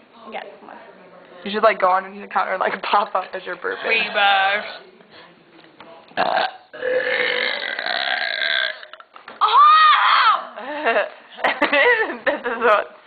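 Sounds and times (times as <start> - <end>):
girl burping: 6.2 - 9.0.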